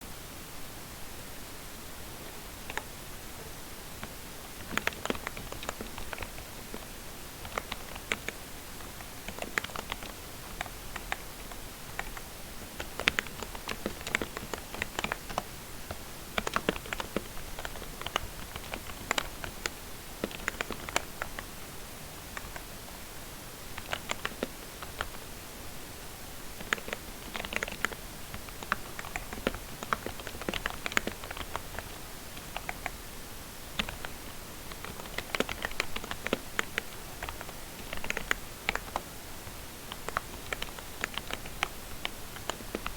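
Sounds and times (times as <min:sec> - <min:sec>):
keyboard typing clicks: 0:04.0 - 0:15.4, 0:16.4 - 0:21.5, 0:26.6 - 0:33.0, 0:33.8 - 0:39.0, 0:39.9 - 0:42.9.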